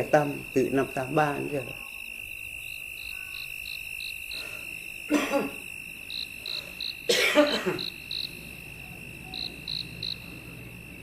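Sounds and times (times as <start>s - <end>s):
crickets chirping: 0.0s - 11.0s
high insect trill: 0.0s - 11.0s
person coughing: 5.1s - 5.6s, 7.1s - 7.8s.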